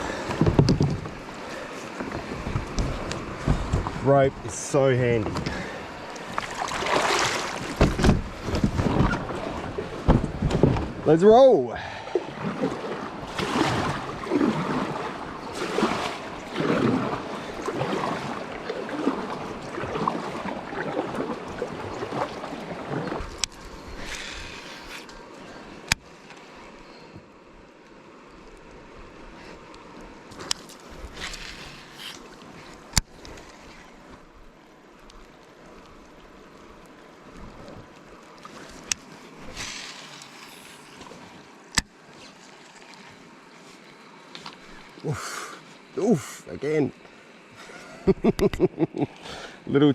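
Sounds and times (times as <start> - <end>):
river water splashing around kayak: 0.0 - 49.9
short hissing splash: 39.4 - 41.0.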